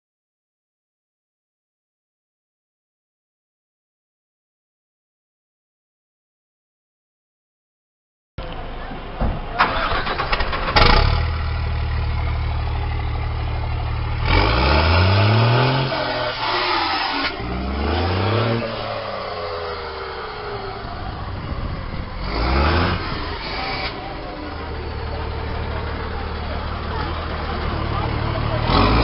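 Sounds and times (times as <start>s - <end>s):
diesel truck engine revving: 9.4s - 29.0s.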